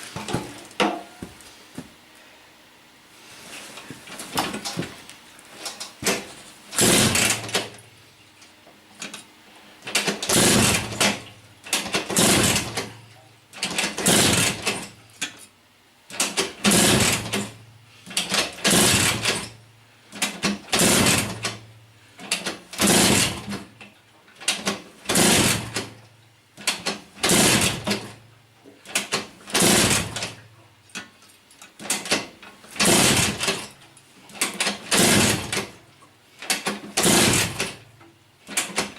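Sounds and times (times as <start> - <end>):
scooter engine kick-started: 6.0 - 7.8, 9.9 - 12.9, 13.6 - 14.9, 16.2 - 17.5, 18.2 - 19.5, 20.3 - 21.6, 22.3 - 23.6, 24.5 - 26.0, 26.6 - 28.1, 28.9 - 30.4, 31.8 - 33.7, 34.4 - 35.8, 36.5 - 37.8.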